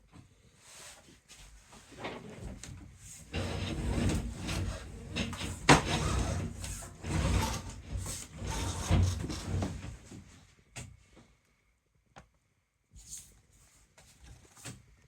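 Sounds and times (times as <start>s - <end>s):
rubbing and scraping of packaging: 3.1s - 10.1s.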